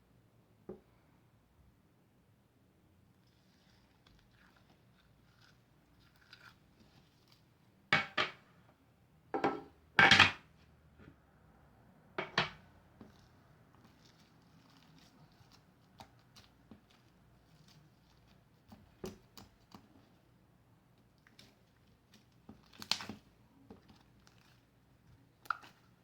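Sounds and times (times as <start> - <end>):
objects clattering on a tabletop: 8.0 - 8.4, 9.4 - 10.5, 12.2 - 12.6.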